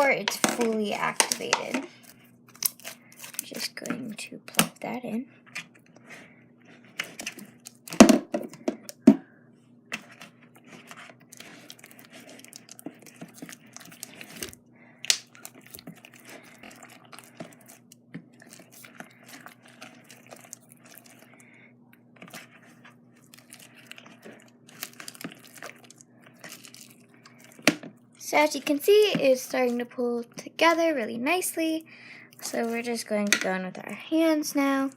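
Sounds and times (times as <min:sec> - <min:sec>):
faint steady hum: 0:00.0 - 0:34.9
slime crackling and tearing: 0:02.5 - 0:03.8, 0:10.0 - 0:21.3, 0:23.2 - 0:27.7.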